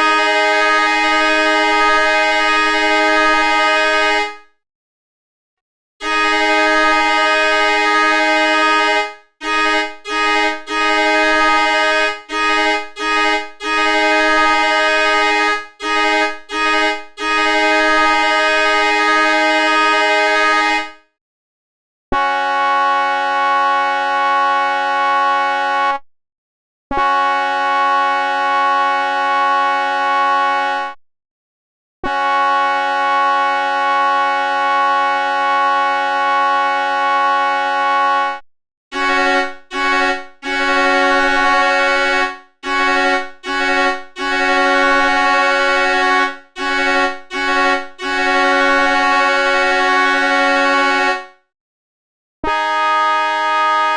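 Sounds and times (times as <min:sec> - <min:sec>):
train horn blasts: 0:00.0 - 0:04.3, 0:06.0 - 0:20.8, 0:22.2 - 0:26.0, 0:26.9 - 0:31.0, 0:32.0 - 0:33.8, 0:39.0 - 0:51.2, 0:52.4 - 0:53.9.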